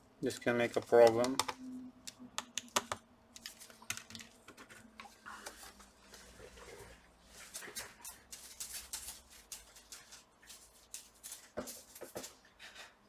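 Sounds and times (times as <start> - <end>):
small clicks and taps on laptop: 0.6 - 5.6.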